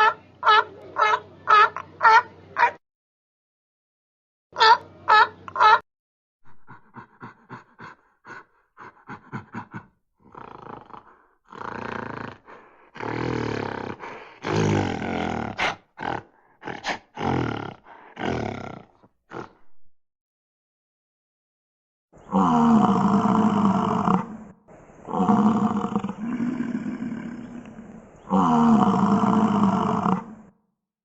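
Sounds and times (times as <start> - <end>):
big cat grunting: 6.5 - 19.8, 22.2 - 30.5
big cat roaring: 10.2 - 19.6, 22.2 - 30.5.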